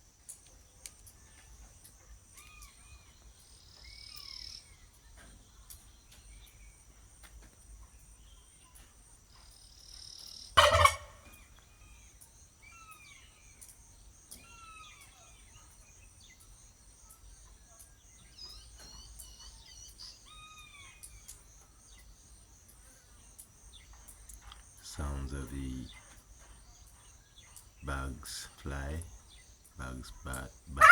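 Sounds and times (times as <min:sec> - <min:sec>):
insect trill: 0:00.0 - 0:30.9
bird chirps: 0:00.3 - 0:30.9
turkey gobbling: 0:10.6 - 0:11.5.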